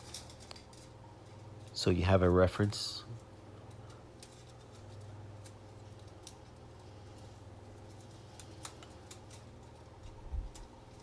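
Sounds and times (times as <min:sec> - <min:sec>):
wire coil clicking: 0:00.0 - 0:02.0, 0:02.7 - 0:11.0
steady low hum: 0:00.0 - 0:11.0.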